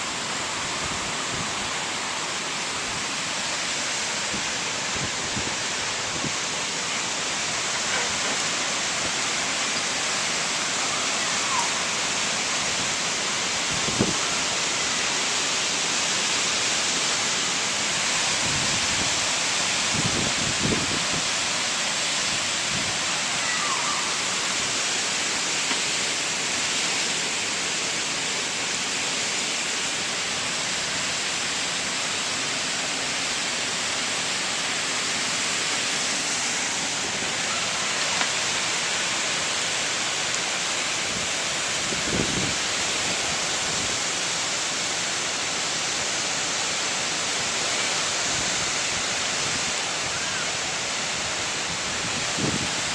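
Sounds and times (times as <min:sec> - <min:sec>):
strong wind: 0:00.0 - 0:03.3, 0:04.1 - 0:06.9, 0:13.6 - 0:14.8, 0:18.0 - 0:21.6, 0:22.2 - 0:24.6, 0:41.0 - 0:44.0, 0:48.1 - 0:52.9
heavy rain: 0:00.0 - 0:52.9.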